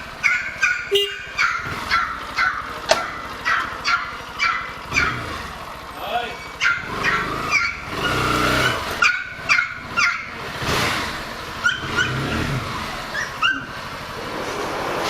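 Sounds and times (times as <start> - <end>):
motorcycle engine idling and revving: 0.0 - 15.0
dog barking: 0.2 - 5.3, 6.4 - 8.2, 9.0 - 10.4, 11.6 - 12.4, 13.1 - 13.8.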